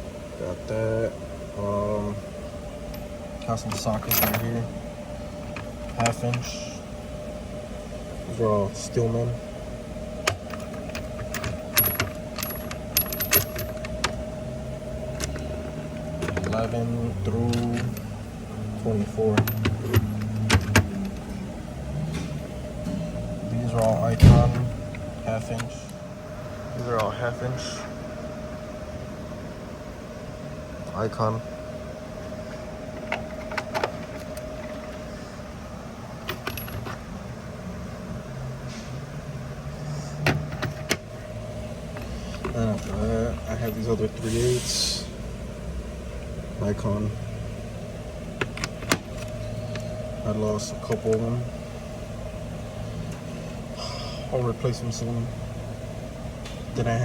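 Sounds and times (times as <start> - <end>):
steady hum: 0.0 - 57.0
metal sockets clinking: 2.9 - 4.7, 10.2 - 14.2, 15.1 - 16.7, 19.0 - 21.3.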